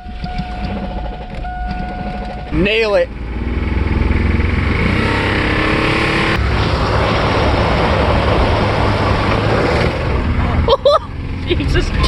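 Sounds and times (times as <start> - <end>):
engine knocking: 0.0 - 4.4
engine revving hard: 2.6 - 10.7.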